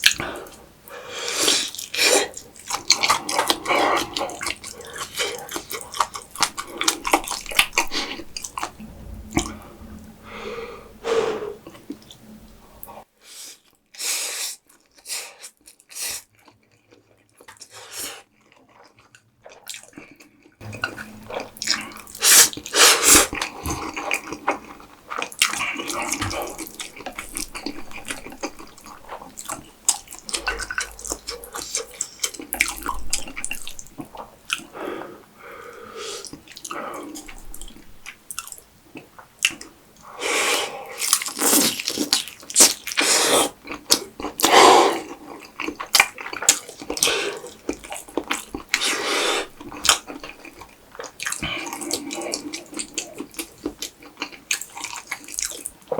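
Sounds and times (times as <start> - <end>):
wet chewing and smacking: 1.5 - 8.8, 18.3 - 34.8, 36.2 - 39.8, 41.0 - 55.9.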